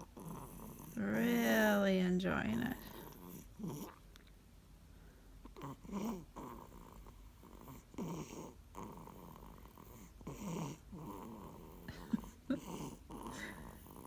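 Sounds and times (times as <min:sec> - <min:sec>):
dog snoring: 0:00.0 - 0:01.7, 0:02.5 - 0:04.0, 0:05.4 - 0:14.0.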